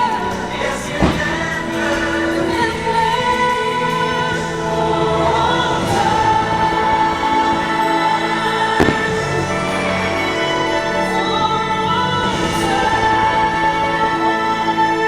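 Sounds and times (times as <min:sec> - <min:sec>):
choir singing: 0:00.0 - 0:15.0
orchestra playing: 0:04.4 - 0:12.0
firework boom: 0:08.8 - 0:10.0.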